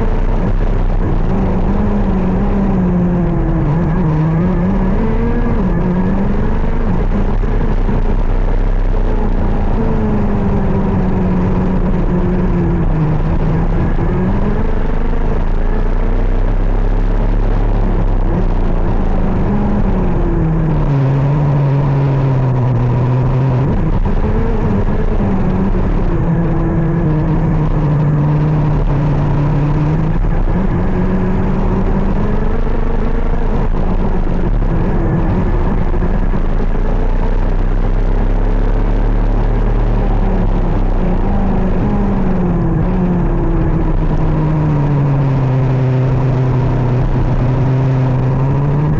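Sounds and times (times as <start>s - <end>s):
kart engine revving: 0.0s - 48.9s.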